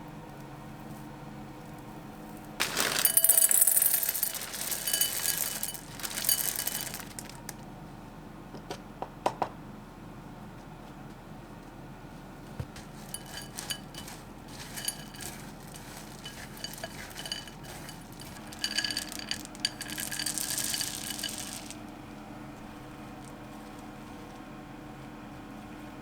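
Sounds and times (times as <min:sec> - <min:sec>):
small hard objects clinking: 0:02.6 - 0:07.6, 0:12.6 - 0:22.0.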